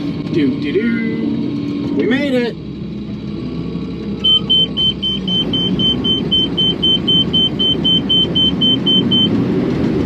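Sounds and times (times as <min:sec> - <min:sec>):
combine engine rumble: 0:00.0 - 0:10.0
rapid warning beeps: 0:04.2 - 0:09.3.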